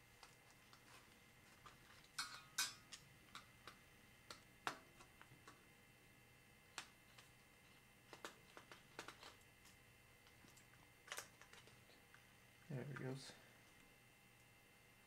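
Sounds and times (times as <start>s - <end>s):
small tools clicking and tapping: 0.2s - 5.6s, 8.1s - 11.9s.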